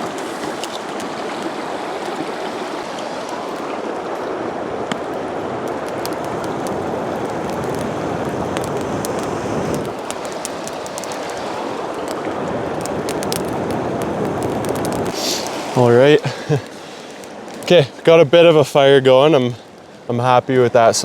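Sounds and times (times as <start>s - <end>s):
river rushing: 0.0s - 20.1s
small sharp ticks and snaps: 5.7s - 15.6s, 16.5s - 17.8s.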